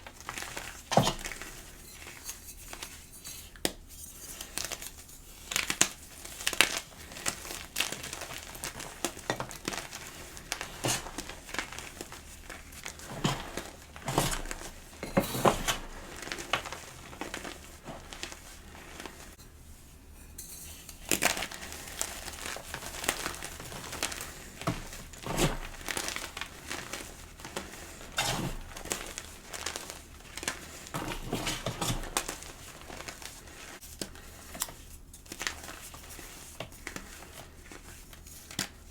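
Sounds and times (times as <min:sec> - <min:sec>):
chalk crunching and crackling: 0:00.0 - 0:19.4, 0:20.8 - 0:38.9.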